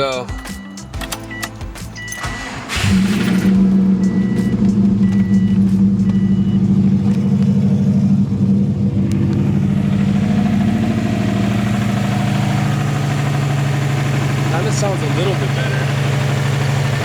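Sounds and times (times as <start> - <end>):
brief beep: 0.3 - 2.6, 4.0 - 7.4
car engine knocking: 1.6 - 8.6, 9.2 - 17.0.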